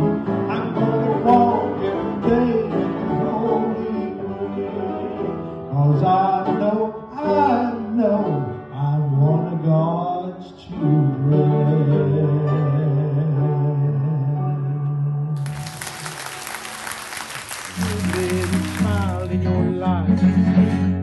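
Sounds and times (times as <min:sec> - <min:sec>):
piano: 0:00.0 - 0:21.0
person singing: 0:17.7 - 0:20.0.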